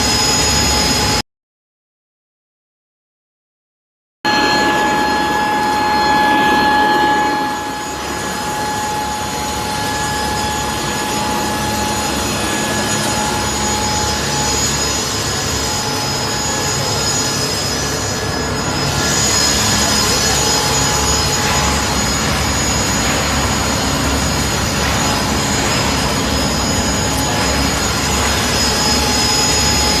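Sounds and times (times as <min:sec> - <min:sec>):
food pulverizer whining: 0:07.8 - 0:30.0.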